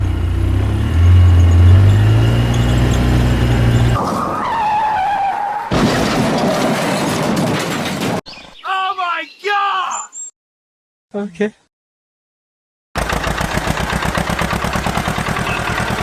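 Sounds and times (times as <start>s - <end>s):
squeal sinking in pitch: 0.8s - 5.7s.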